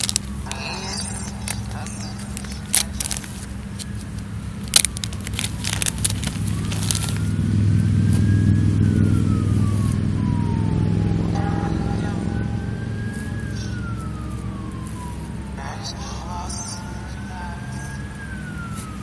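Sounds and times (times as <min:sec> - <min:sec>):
sharp crackling clicks: 0:00.0 - 0:07.3
distant siren wailing: 0:00.0 - 0:19.0
low motor drone: 0:00.0 - 0:19.0.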